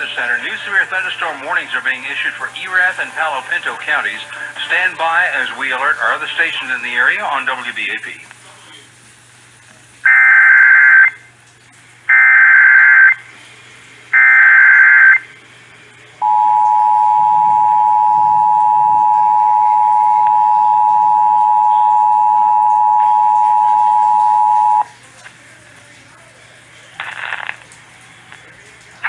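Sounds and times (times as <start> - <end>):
digital data bursts: 0.0 - 8.2
two-tone attention signal: 16.2 - 24.8.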